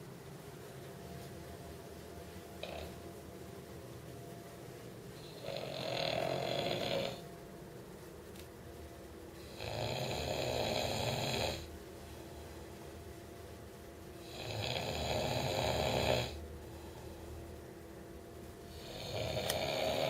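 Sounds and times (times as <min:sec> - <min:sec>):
snoring: 0:02.6 - 0:03.0, 0:05.2 - 0:07.2, 0:09.4 - 0:11.7, 0:14.2 - 0:16.4, 0:18.7 - 0:20.0.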